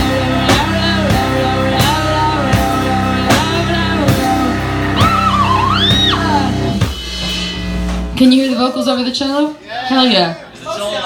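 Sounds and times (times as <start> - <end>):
drum kit beat: 0.0 - 8.8.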